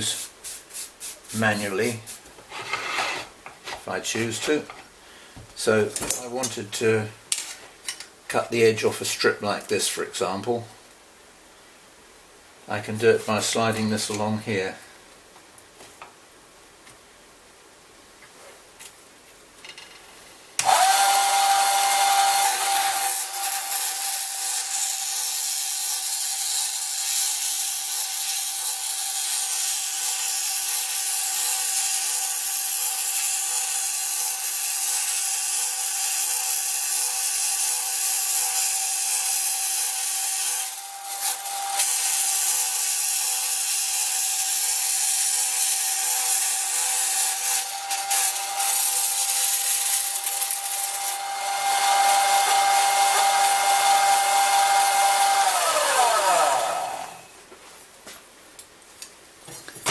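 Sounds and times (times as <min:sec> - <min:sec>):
bandsaw blade cutting: 0:00.0 - 0:04.4, 0:20.6 - 0:57.3
electric motor whine: 0:20.6 - 0:24.5, 0:47.3 - 0:57.3.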